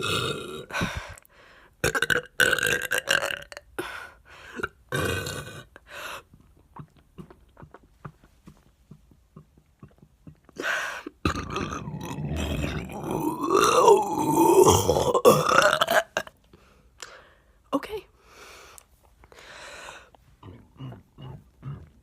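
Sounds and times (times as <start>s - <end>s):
woman burping: 0.0s - 1.0s, 1.8s - 3.7s, 4.6s - 5.8s, 9.3s - 16.4s.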